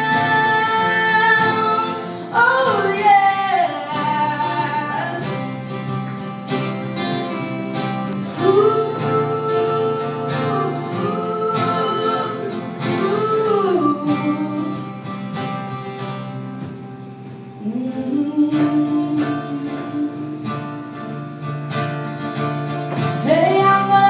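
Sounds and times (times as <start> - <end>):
woman singing wordless vocal runs: 0.0 - 5.5, 8.2 - 14.8
acoustic guitar strummed: 0.0 - 24.0.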